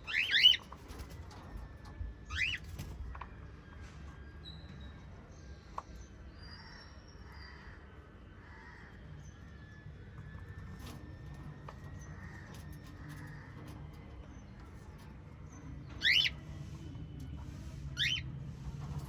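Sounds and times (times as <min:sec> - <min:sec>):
pet birds chirping: 0:00.0 - 0:01.6, 0:02.2 - 0:03.3, 0:04.4 - 0:18.8
low background rumble: 0:05.2 - 0:19.0.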